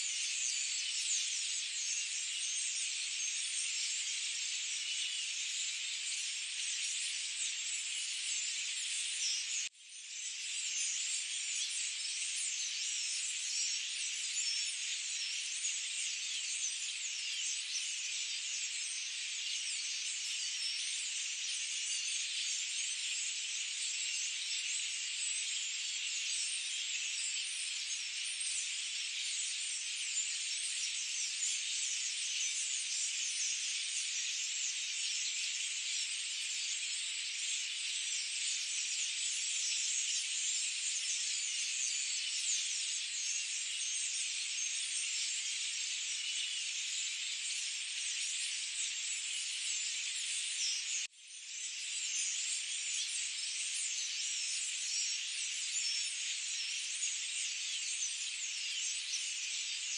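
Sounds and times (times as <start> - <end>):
chorus of forest birds: 0.0 - 59.9.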